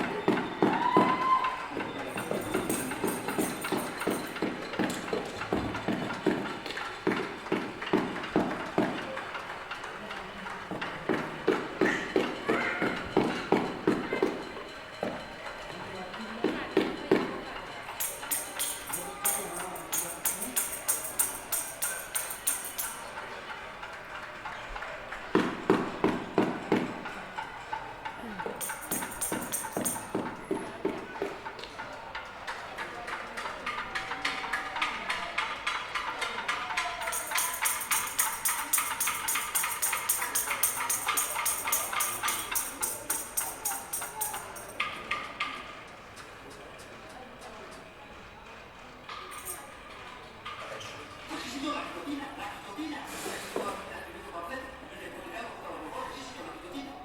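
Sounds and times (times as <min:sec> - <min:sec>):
bright metal ringing: 0:02.1 - 0:04.4, 0:18.0 - 0:23.2, 0:28.6 - 0:30.2, 0:37.0 - 0:44.8
pots and pans clanging: 0:18.0 - 0:23.2, 0:28.5 - 0:30.3, 0:37.0 - 0:45.1.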